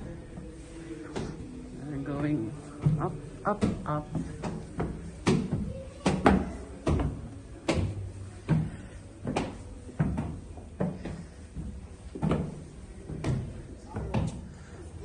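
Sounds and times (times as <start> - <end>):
footsteps climbing stairs: 2.2 - 14.7.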